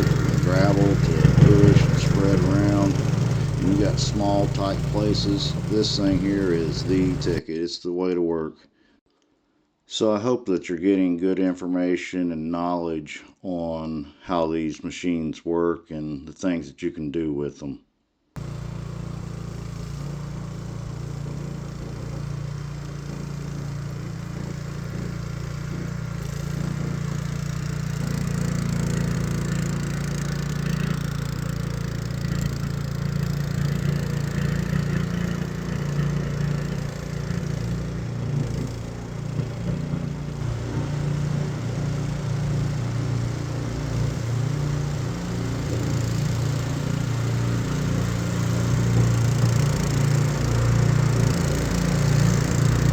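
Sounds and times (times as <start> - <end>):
blade pushing dirt and gravel: 0.0 - 7.4, 18.4 - 52.9
small engine running: 0.0 - 7.4, 18.4 - 52.9.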